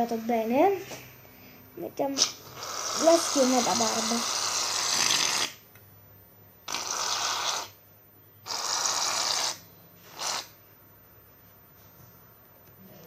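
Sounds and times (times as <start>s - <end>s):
aerosol can spraying foam: 2.6s - 5.6s, 6.7s - 7.8s, 8.5s - 10.5s.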